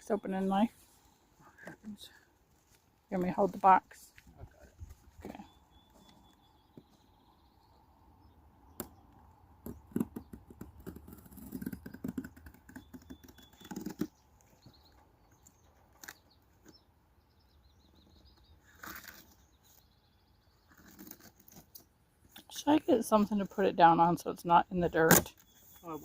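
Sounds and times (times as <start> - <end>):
bird chirps: 4.6 - 10.4, 12.7 - 21.4, 24.9 - 26.0.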